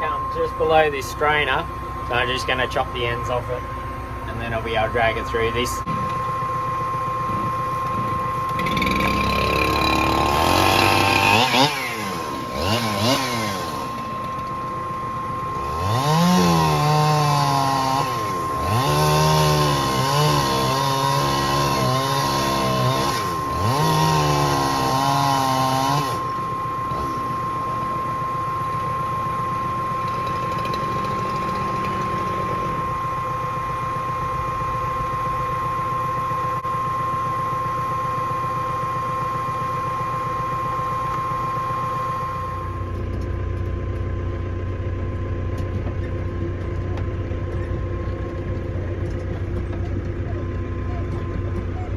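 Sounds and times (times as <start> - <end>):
engine hum: 0.0 - 51.9
chainsaw revving: 8.5 - 28.3, 30.0 - 33.0.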